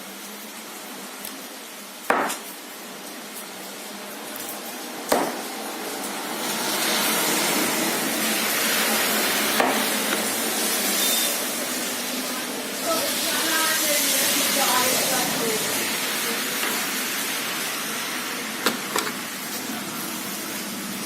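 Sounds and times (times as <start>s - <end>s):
steady hiss: 0.0s - 21.0s
sharp knocks: 2.1s - 2.4s, 5.1s - 5.4s.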